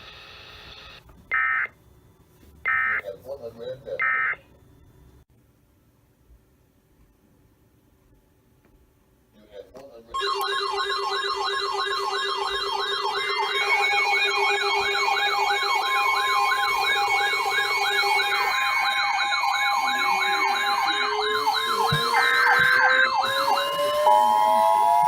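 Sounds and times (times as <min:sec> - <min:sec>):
electronic siren yelping: 0:01.3 - 0:01.7, 0:02.7 - 0:03.0, 0:04.0 - 0:04.4, 0:10.2 - 0:25.0
steady alert tones: 0:10.2 - 0:24.5.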